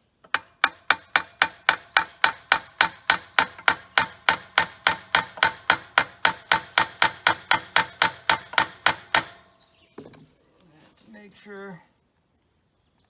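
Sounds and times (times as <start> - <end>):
hammer striking metal: 0.3 - 9.5.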